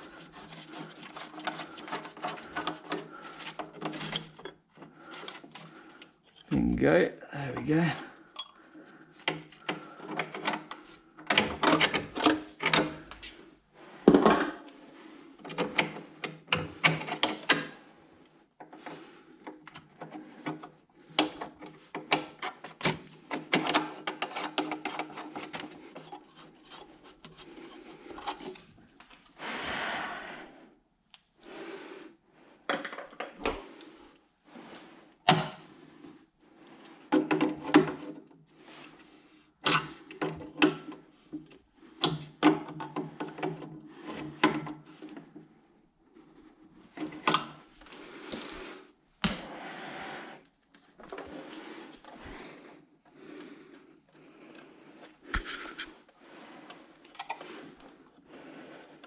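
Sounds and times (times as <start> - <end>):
scraping on wood: 0.0 - 6.0, 23.3 - 28.7, 55.0 - 56.0.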